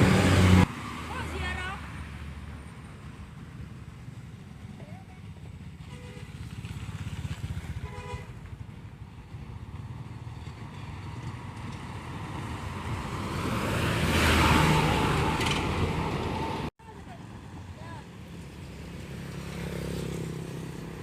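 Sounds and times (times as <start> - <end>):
heavy vehicle passing: 0.0 - 21.0
traffic engine rumble: 0.0 - 21.0.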